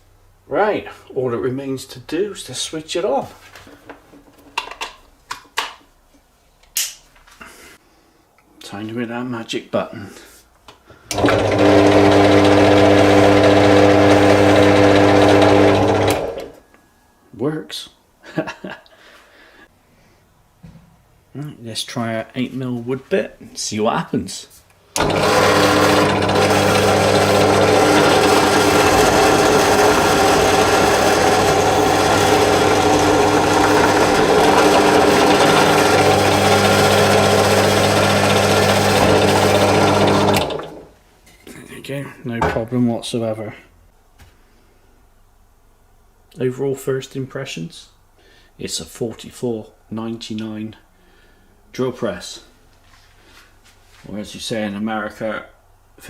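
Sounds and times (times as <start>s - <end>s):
drill press motor humming: 11.1s - 16.6s, 25.0s - 40.9s.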